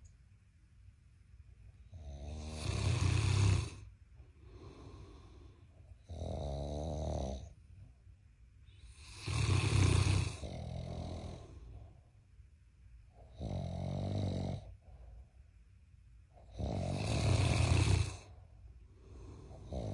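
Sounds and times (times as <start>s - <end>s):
soft breaths: 1.6s - 19.9s
loud snoring: 1.9s - 3.9s, 6.1s - 7.5s, 8.9s - 11.6s, 13.3s - 14.7s, 16.5s - 18.3s, 19.2s - 19.9s.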